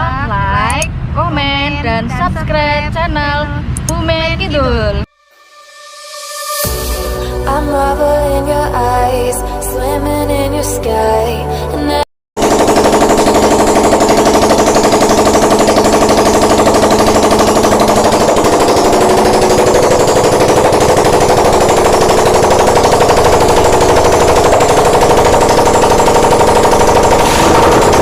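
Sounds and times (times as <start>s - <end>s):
motorcycle engine running loudly: 12.4s - 28.0s.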